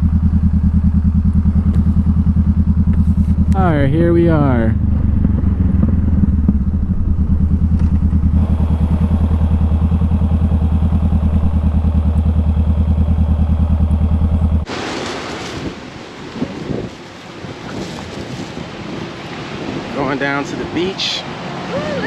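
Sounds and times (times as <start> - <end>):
motorcycle engine running: 0.0 - 14.7
wind: 0.0 - 22.0
surf: 14.6 - 22.0.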